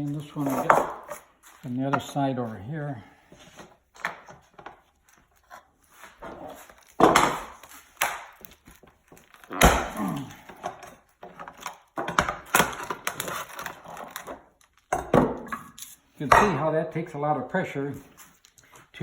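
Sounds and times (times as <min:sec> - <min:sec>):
mold parts cracking loose: 0:06.8 - 0:15.2.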